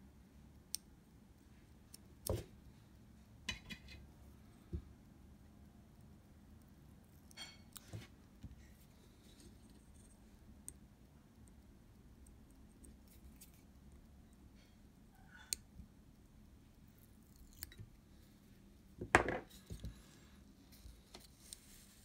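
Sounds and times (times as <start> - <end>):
faint clicks and taps of tools: 6.6 - 18.2.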